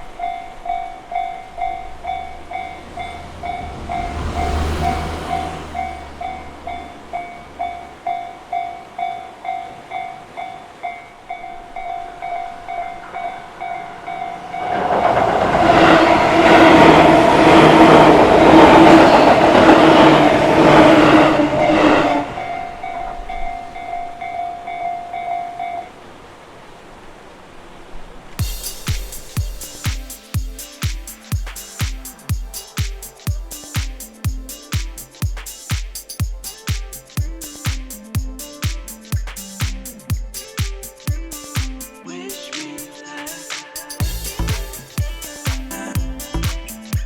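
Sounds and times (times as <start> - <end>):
level-crossing warning bell ringing: 0.0 - 26.0
train wheels clattering: 12.0 - 22.6.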